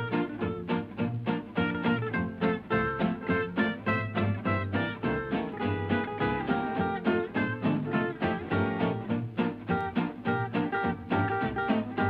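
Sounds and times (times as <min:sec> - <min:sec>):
plucked guitar: 0:00.0 - 0:12.0
upbeat swing music: 0:00.0 - 0:12.0.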